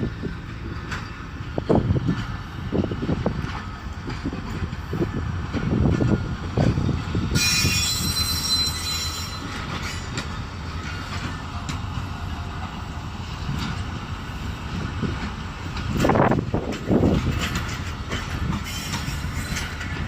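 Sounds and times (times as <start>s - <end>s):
railway wagons rumbling: 0.0s - 20.0s
wheels knocking on rails: 0.0s - 20.0s
metallic wheel squeal: 6.8s - 11.3s, 18.4s - 20.0s.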